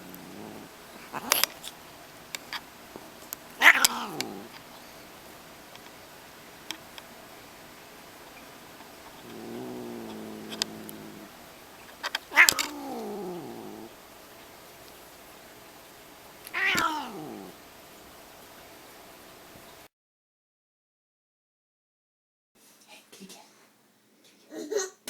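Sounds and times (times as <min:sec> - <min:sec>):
cat yowling: 0:00.0 - 0:01.5, 0:03.6 - 0:04.5, 0:09.3 - 0:11.4, 0:12.3 - 0:13.9, 0:16.5 - 0:17.6.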